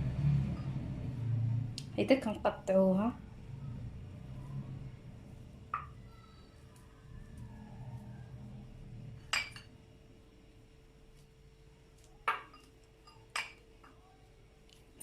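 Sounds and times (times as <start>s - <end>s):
clinks on a dish: 12.3s - 14.0s.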